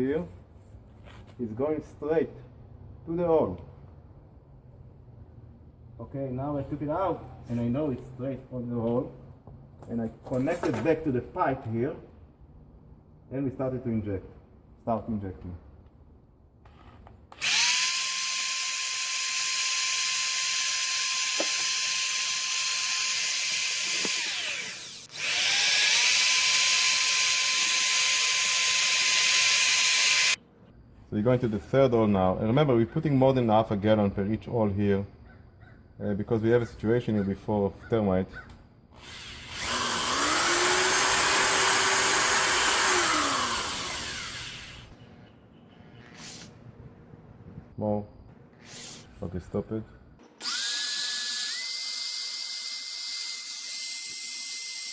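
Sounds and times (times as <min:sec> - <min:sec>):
electric drill running: 0:17.4 - 0:30.4, 0:39.0 - 0:44.9, 0:50.4 - 0:54.9
small electric motor whine: 0:17.4 - 0:30.4, 0:39.0 - 0:44.9, 0:50.4 - 0:54.9.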